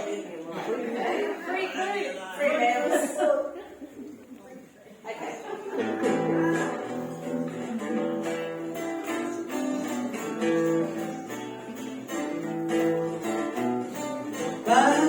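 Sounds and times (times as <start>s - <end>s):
acoustic guitar strumming: 5.8s - 15.0s.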